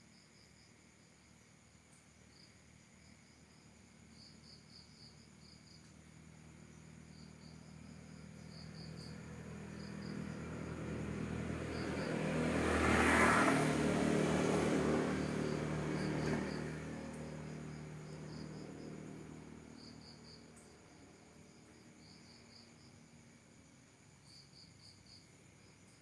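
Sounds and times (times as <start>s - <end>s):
crickets chirping: 0.0s - 26.0s
vehicle engine and road noise passing: 6.1s - 23.1s.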